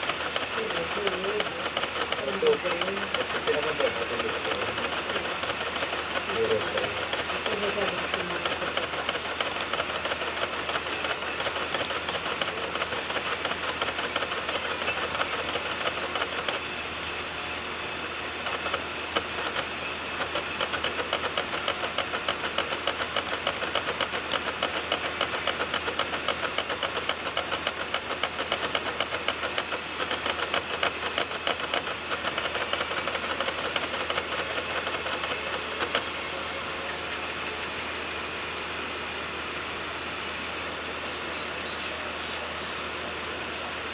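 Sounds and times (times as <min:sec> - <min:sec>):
disc drive head clicking: 0:00.0 - 0:16.6, 0:18.4 - 0:36.1
spinning disc whir: 0:00.0 - 0:43.9.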